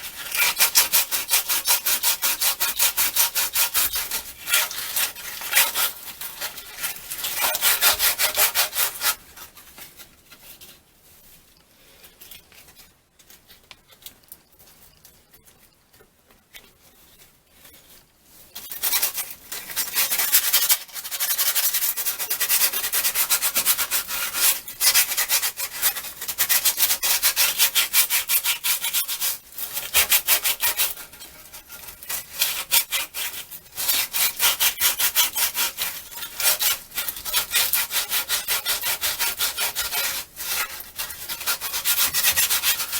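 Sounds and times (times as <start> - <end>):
sandpaper scraping metal: 0.0 - 9.6, 18.5 - 42.9.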